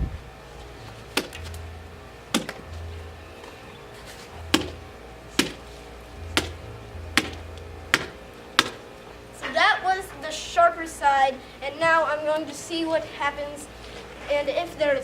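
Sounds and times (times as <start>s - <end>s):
background music with bass: 0.0s - 9.4s
hammer striking watermelon: 1.2s - 1.4s, 2.3s - 2.6s, 4.5s - 4.8s, 5.4s - 5.6s, 6.3s - 8.8s.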